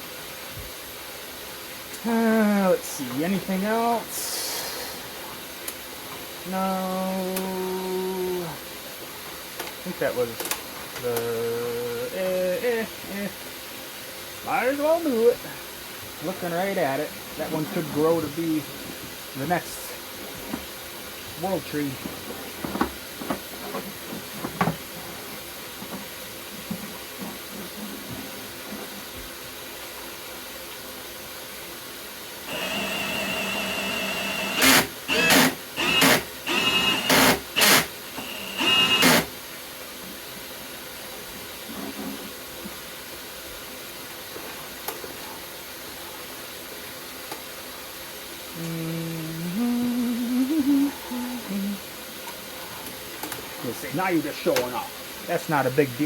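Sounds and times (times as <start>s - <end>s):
steady hiss: 0.0s - 56.0s
drill motor whine: 32.5s - 39.3s.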